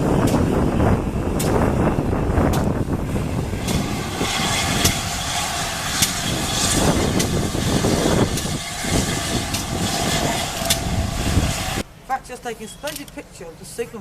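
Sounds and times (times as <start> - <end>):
train rumbling past: 0.0 - 12.0
sharp clicks: 12.8 - 13.2.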